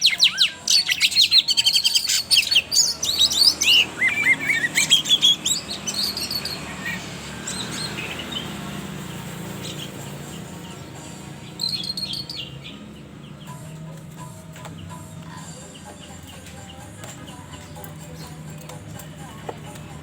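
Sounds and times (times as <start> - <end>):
bird chirping and whistling: 0.0 - 13.9.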